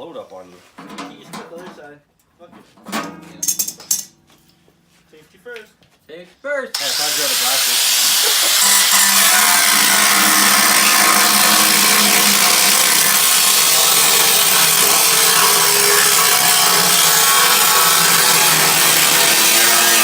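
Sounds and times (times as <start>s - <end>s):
power tool cutting steel: 6.8s - 20.0s.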